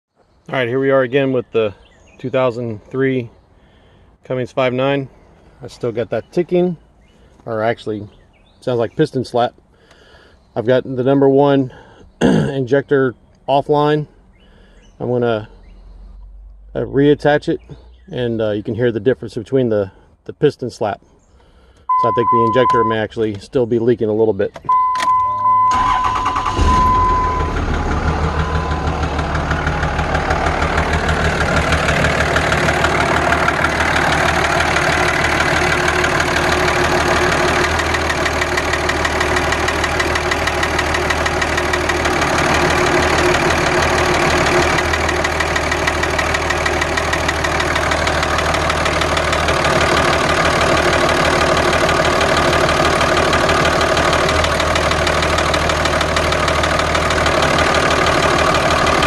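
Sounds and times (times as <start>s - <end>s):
diesel engine idling with knock: 25.4s - 59.0s.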